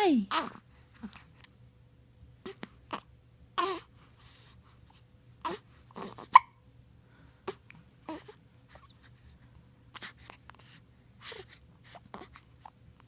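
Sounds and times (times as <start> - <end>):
baby hiccuping: 5.5 - 6.6.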